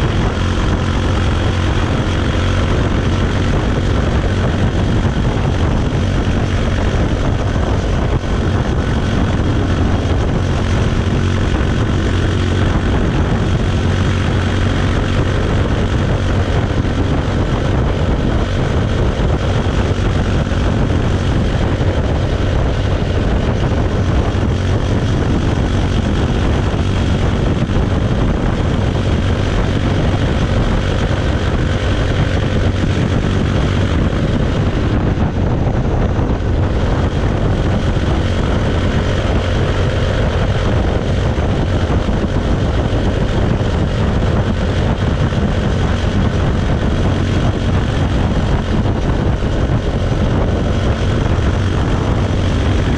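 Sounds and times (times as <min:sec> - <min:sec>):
motorcycle engine droning: 0:00.0 - 0:52.9.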